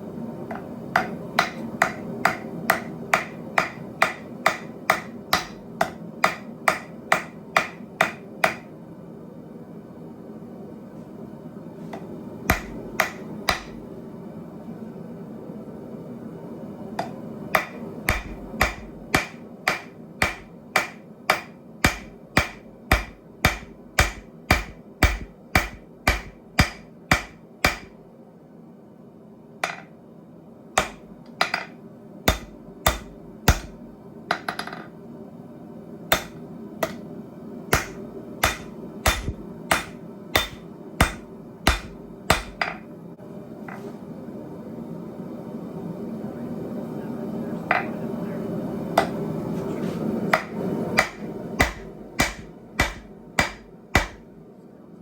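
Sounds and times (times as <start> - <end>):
hammer striking steel on anvil: 0.5 - 8.7, 12.5 - 13.8, 17.0 - 28.0, 29.6 - 29.9, 30.8 - 31.7, 32.3 - 34.8, 36.1 - 37.0, 37.7 - 42.8, 50.3 - 54.2.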